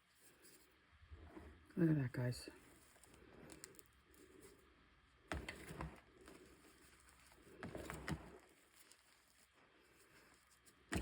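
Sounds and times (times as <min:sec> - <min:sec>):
chalk crunching and crackling: 0:05.4 - 0:11.0.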